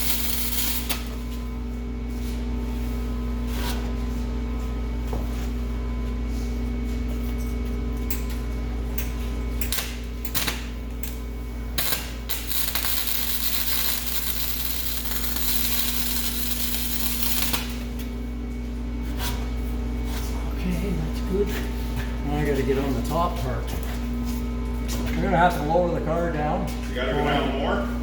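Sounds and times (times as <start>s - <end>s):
welding arc noise: 0.0s - 1.3s, 9.6s - 18.1s
steady electrical hum: 0.0s - 28.0s.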